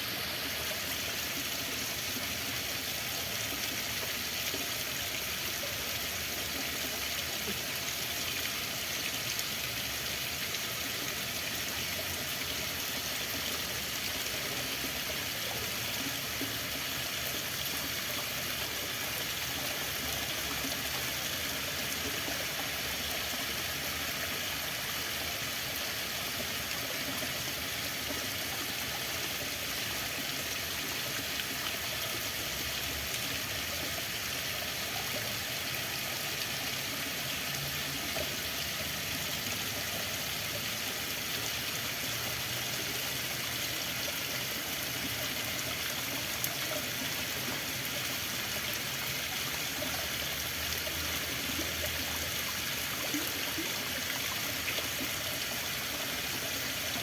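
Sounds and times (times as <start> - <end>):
water flowing: 0.0 - 57.0.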